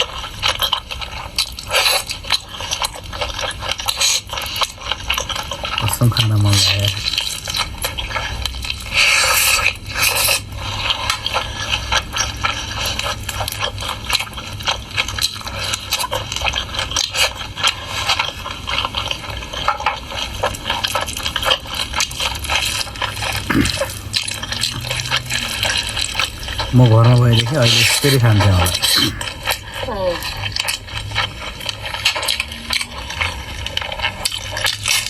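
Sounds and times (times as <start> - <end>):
mouth clicks and slurps: 23.0 - 29.8
wet chewing and lip-smacking: 23.2 - 29.8.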